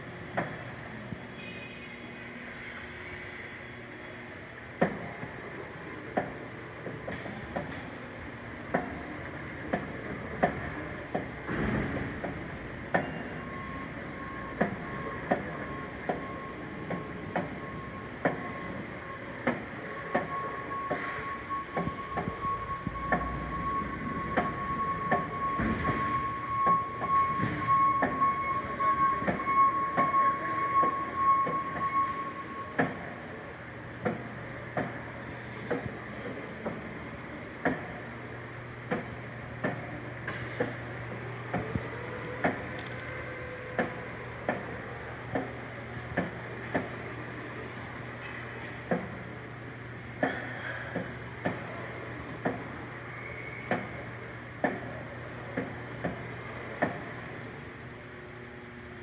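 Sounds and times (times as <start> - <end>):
machine knocking: 8.7 - 32.2
high whine: 11.9 - 33.9.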